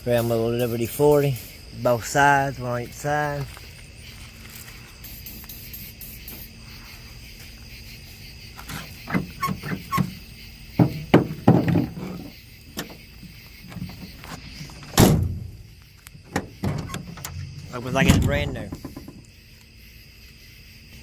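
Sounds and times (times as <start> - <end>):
metallic latch clicks and clunks: 16.3 - 19.2.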